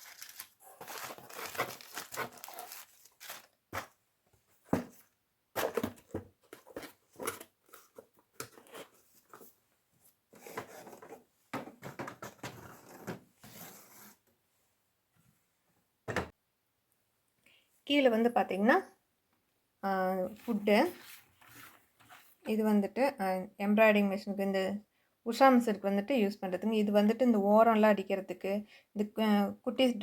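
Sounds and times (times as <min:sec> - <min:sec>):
packets rustling: 0:00.0 - 0:04.0.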